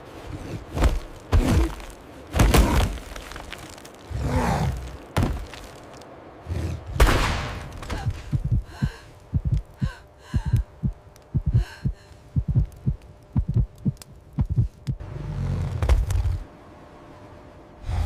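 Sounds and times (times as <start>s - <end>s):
heartbeat thumps: 8.0s - 15.0s.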